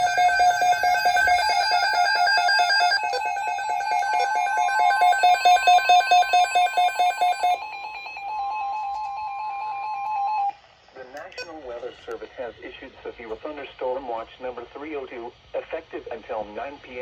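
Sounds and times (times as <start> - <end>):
steady high alarm tone: 0.0 - 10.6.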